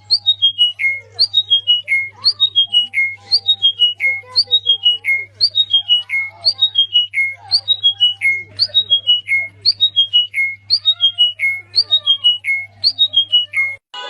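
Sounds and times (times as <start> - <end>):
faint bird calls: 0.0 - 13.8
songbird whistled phrase: 0.0 - 13.8.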